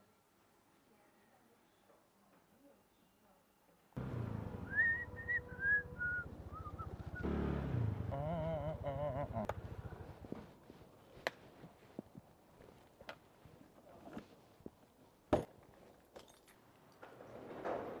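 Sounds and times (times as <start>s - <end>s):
small engine pulsing: 4.0s - 10.1s
high gliding whistle: 4.6s - 7.3s.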